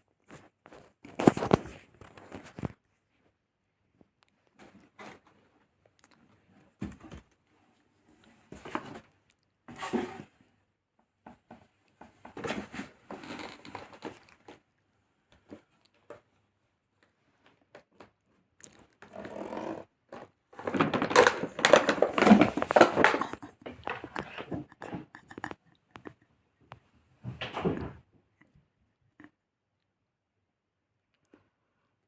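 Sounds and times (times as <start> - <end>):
packaging crinkling: 20.6 - 24.5.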